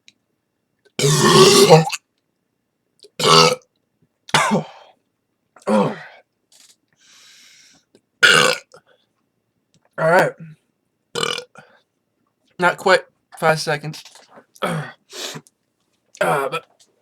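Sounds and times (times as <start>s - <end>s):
man burping: 1.0s - 2.0s, 3.2s - 3.6s, 4.3s - 4.8s, 5.6s - 6.1s, 8.2s - 8.8s, 10.0s - 10.6s, 11.2s - 11.6s, 14.6s - 15.0s, 16.2s - 16.7s.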